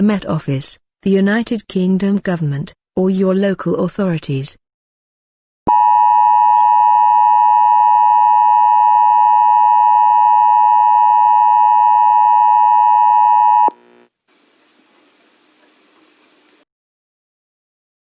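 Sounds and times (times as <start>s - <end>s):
faint hiss: 14.3s - 16.6s.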